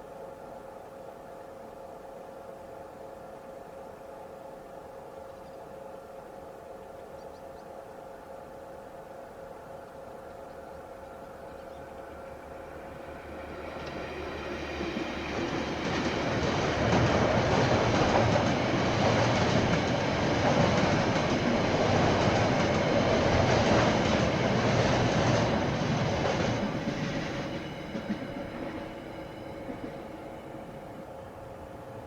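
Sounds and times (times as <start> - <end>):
train wheels clickety-clack: 11.6 - 32.0.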